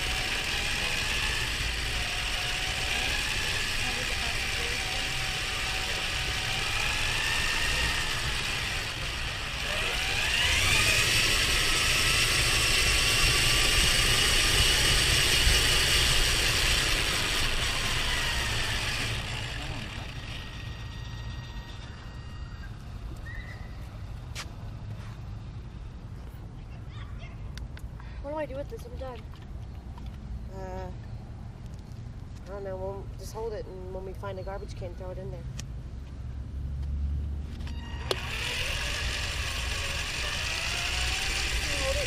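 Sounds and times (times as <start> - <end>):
car engine rumble: 0.0 - 27.0.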